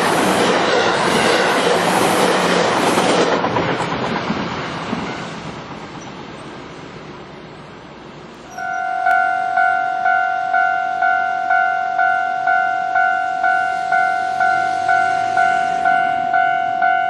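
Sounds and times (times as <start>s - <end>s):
train rumble: 0.0s - 17.0s
level crossing bell clanging: 8.5s - 17.0s.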